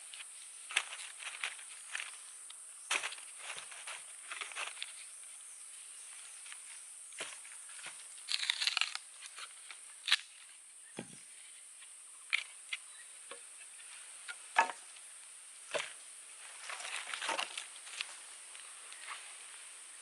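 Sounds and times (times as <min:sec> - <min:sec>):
rustling of handled objects: 0:00.0 - 0:05.5, 0:15.7 - 0:19.4.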